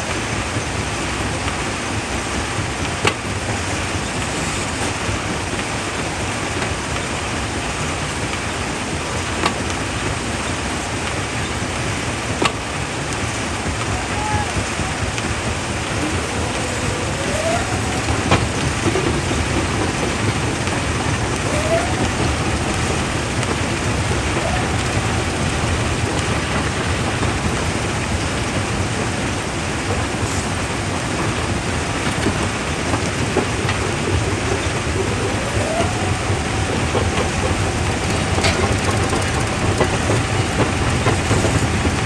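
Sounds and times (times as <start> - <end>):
machinery whines: 0.2 - 42.0
rock crusher clattering: 9.2 - 42.0.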